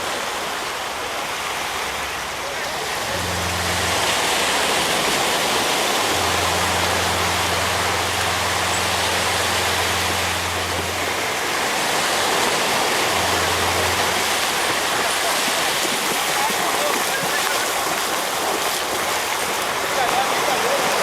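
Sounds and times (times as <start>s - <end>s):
sea surf rushing: 0.0s - 21.0s
low steady hum: 2.7s - 16.4s.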